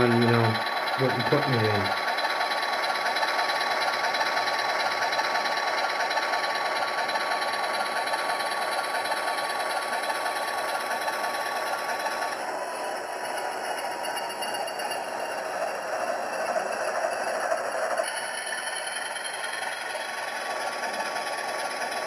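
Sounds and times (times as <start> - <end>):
thin steady tone: 0.0 - 2.0
diesel engine sound from speaker: 0.0 - 22.0
model train motor whir: 0.0 - 22.0.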